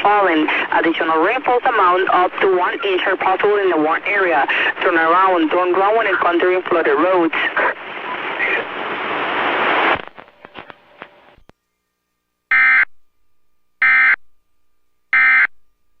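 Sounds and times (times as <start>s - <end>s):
crackles: 7.9s - 11.6s.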